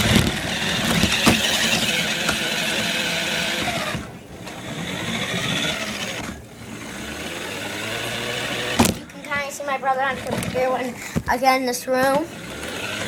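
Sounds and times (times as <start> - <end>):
toy car electric motor and gears: 0.0 - 13.0.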